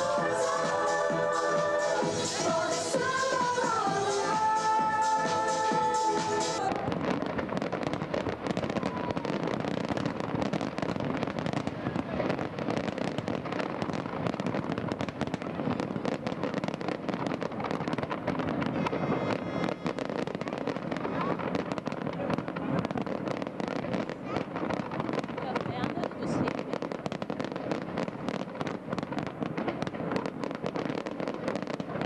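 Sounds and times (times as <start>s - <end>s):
people's voices: 0.0s - 7.3s, 8.6s - 9.7s, 17.6s - 27.9s
fireworks crackling and popping: 0.0s - 32.0s.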